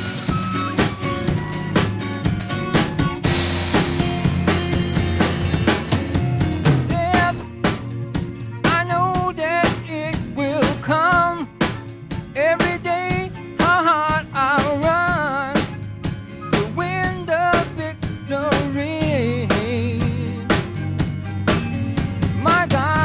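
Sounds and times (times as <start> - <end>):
drum kit steady beat: 0.0 - 23.0
ornamented lead melody: 0.0 - 23.0.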